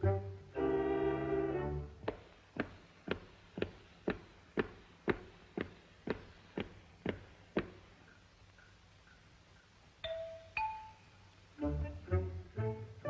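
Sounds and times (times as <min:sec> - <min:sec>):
sharp dry taps: 0:02.0 - 0:10.0.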